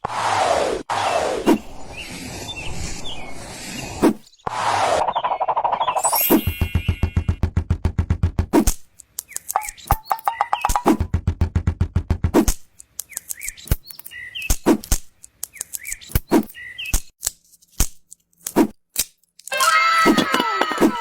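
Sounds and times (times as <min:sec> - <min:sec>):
sharp clicks and knocks: 0:06.5 - 0:16.2.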